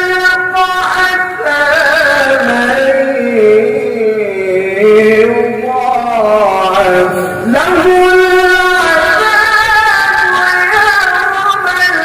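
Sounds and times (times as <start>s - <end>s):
man reciting melodically: 0.0s - 12.0s.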